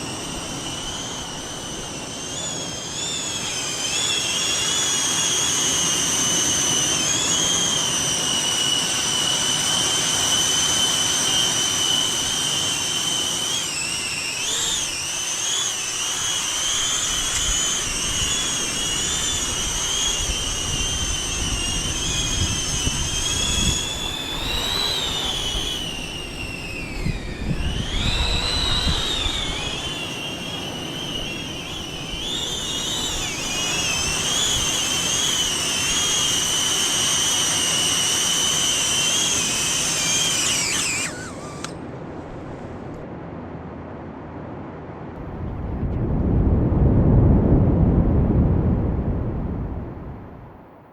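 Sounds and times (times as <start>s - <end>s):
drone propellers whining: 0.0s - 43.0s
wind rumble on microphone: 17.1s - 35.6s, 45.0s - 50.8s.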